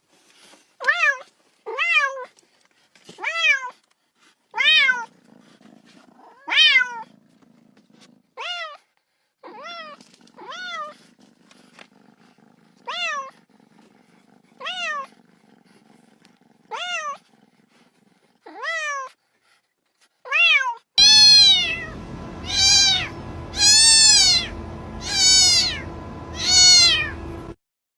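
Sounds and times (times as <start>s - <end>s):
cat meowing: 4.6s - 5.1s, 6.3s - 7.0s, 14.6s - 15.1s, 16.7s - 17.2s, 20.3s - 27.3s
faint low rumble: 21.0s - 27.6s.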